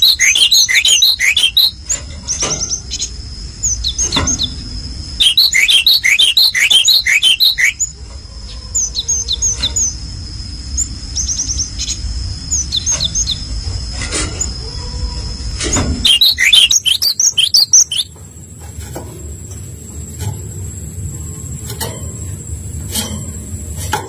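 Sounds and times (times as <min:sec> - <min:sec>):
songbirds chirping: 0:00.0 - 0:18.8.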